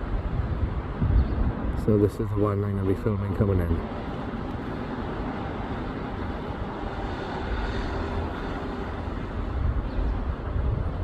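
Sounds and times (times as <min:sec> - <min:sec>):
airliner engines: 0:00.0 - 0:11.0.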